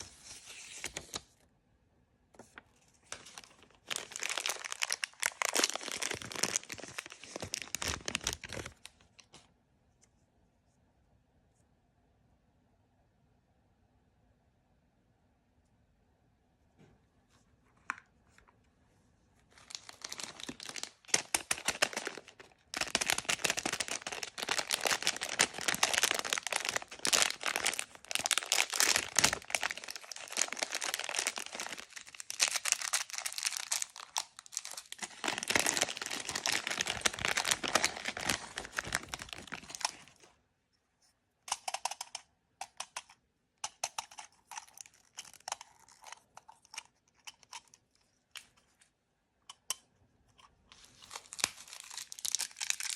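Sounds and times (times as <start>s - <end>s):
wrapper crinkling and tearing: 2.4s - 9.3s, 19.5s - 40.3s, 50.8s - 52.9s.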